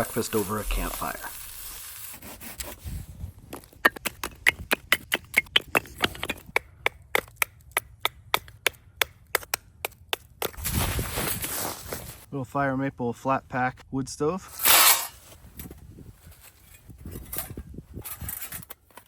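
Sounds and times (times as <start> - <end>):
soft rubbing of firewood: 0.0 - 3.7, 15.2 - 19.0
sharp wooden clicks: 3.8 - 10.6.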